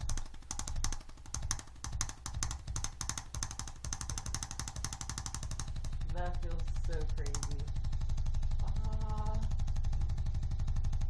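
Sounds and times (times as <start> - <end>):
adjusting instrument rapid clicks: 0.0 - 8.8.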